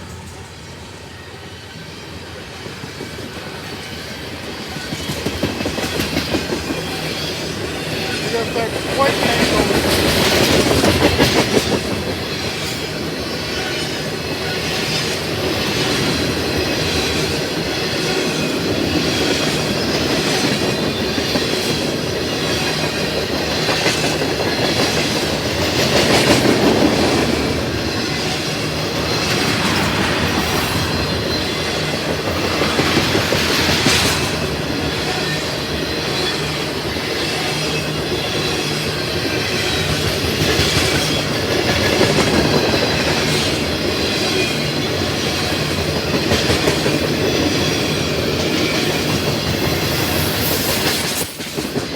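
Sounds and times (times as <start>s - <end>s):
freight train wheels clacking: 0.0s - 51.9s.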